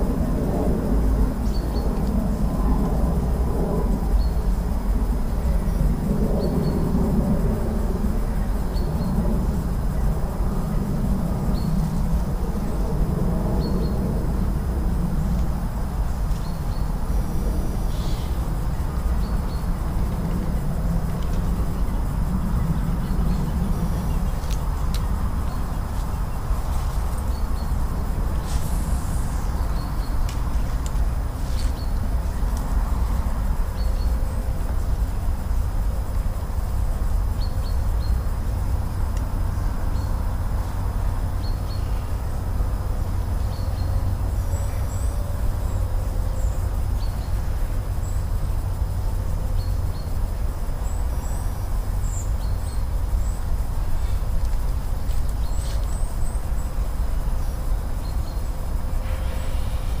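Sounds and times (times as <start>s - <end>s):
low outdoor rumble: 0.0s - 60.0s.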